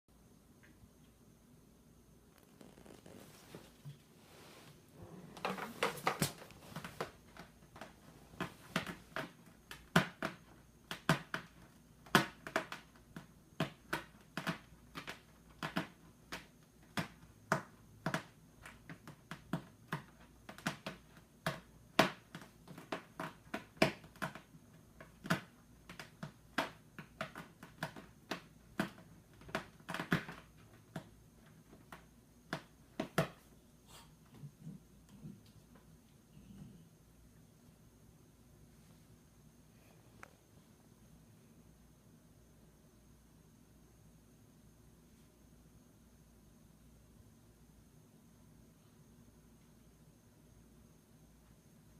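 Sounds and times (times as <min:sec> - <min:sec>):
cats tapping and knocking: 0:05.3 - 0:33.5.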